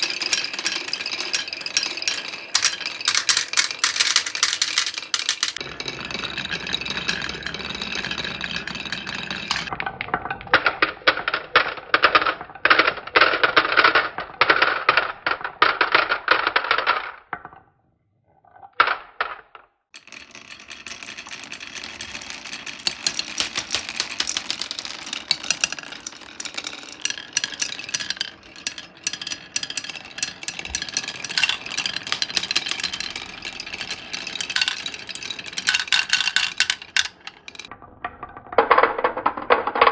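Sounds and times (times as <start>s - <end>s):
marbles rattling down wooden run: 0.0s - 9.7s, 20.0s - 37.7s.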